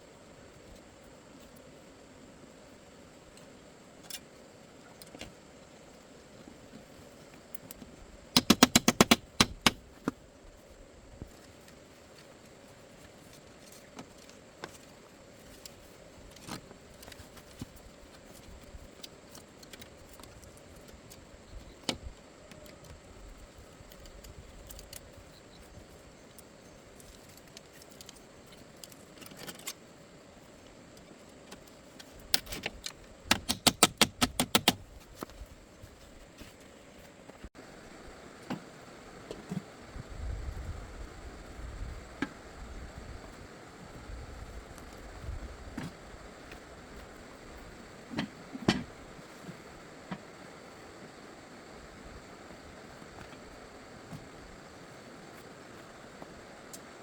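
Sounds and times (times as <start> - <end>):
faint steady hum: 0.0 - 57.0
light clicks and handling noises: 3.2 - 37.5.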